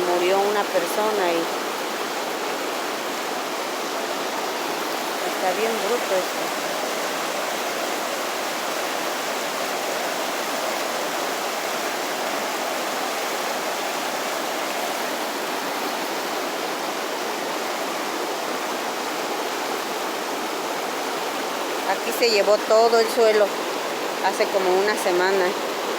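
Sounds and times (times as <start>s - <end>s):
flooded river rushing: 0.0s - 25.9s.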